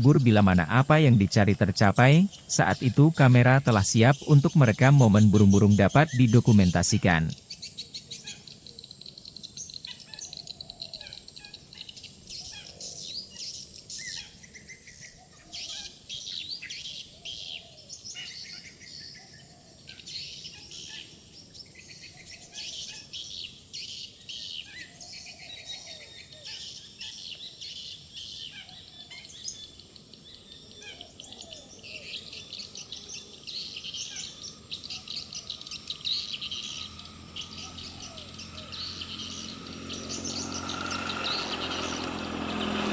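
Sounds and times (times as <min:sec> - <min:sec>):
steady high-pitched hiss: 0:00.0 - 0:10.5
birds chirping and calling: 0:00.0 - 0:42.9.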